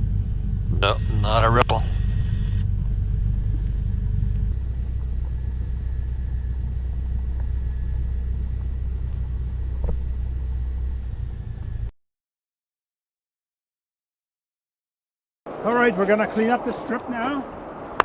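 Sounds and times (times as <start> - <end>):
airplane engine drone in cabin: 0.0 - 11.9.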